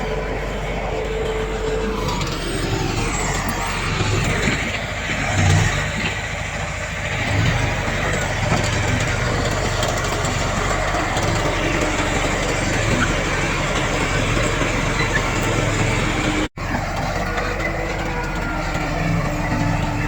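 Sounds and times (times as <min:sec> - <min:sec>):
heavy diesel machinery engine: 0:00.0 - 0:20.0.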